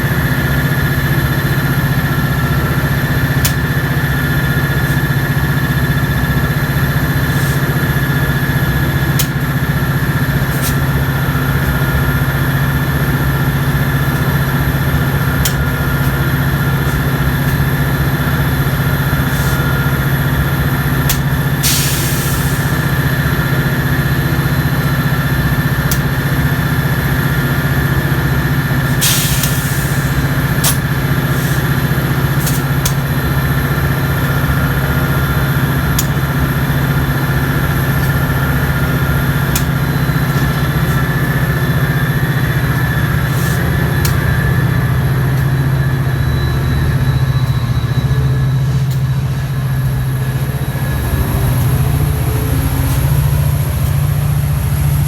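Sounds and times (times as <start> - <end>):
diesel locomotive idling: 0.0 - 55.0
air hiss bursts: 21.0 - 23.0, 28.9 - 33.0.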